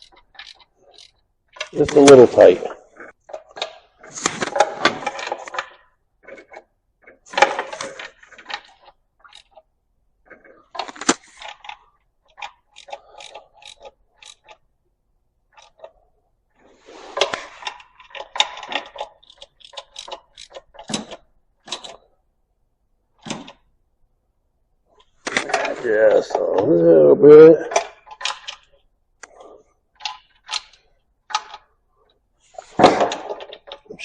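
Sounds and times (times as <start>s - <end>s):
hand tools clicking and clinking: 0.0s - 3.7s, 10.3s - 14.7s, 17.2s - 22.0s.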